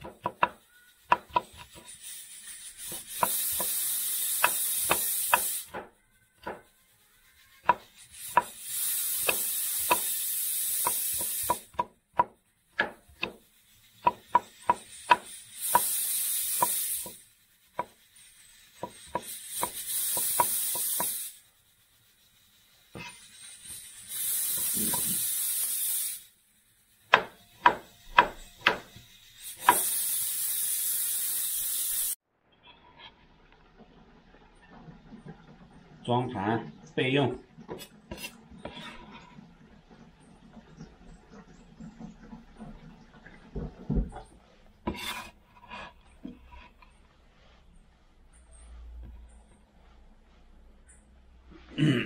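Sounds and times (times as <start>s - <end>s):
knife chopping on wooden board: 0.0s - 1.8s, 4.4s - 6.7s, 9.2s - 10.1s, 10.8s - 13.4s, 14.0s - 15.2s, 27.1s - 28.9s
steady high hiss: 0.3s - 11.9s, 12.5s - 32.2s.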